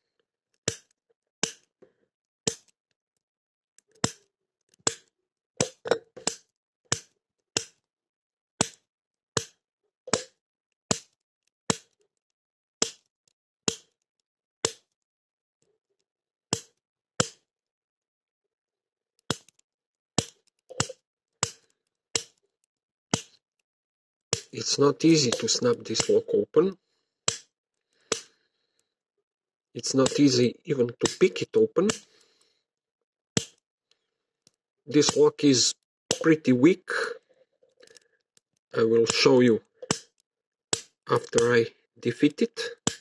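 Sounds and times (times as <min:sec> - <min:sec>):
metallic snaps on lock pins: 0:12.8 - 0:13.1, 0:19.3 - 0:19.6, 0:20.2 - 0:22.4, 0:37.8 - 0:40.9.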